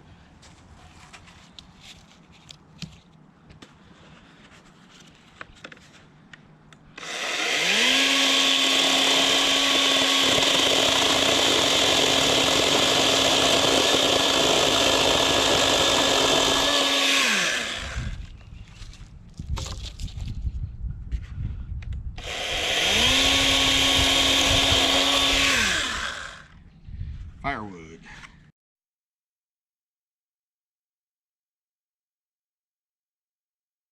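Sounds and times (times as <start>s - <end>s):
electric chainsaw motor spinning: 7.0s - 18.3s, 22.2s - 26.6s.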